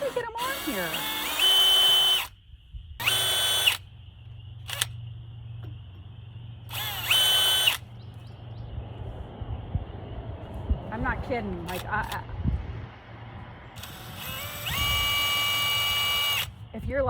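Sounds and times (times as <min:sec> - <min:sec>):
power drill spinning: 0:00.0 - 0:02.4, 0:03.0 - 0:03.8, 0:04.6 - 0:05.0, 0:06.7 - 0:07.8, 0:13.8 - 0:16.6
sharp click: 0:04.7 - 0:05.0.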